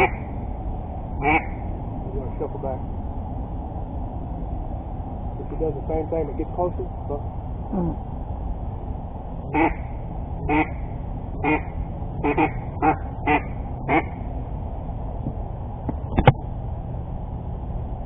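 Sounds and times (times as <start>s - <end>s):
duck quacks: 0.0s - 0.2s, 1.2s - 1.6s, 9.5s - 10.8s, 11.4s - 14.1s.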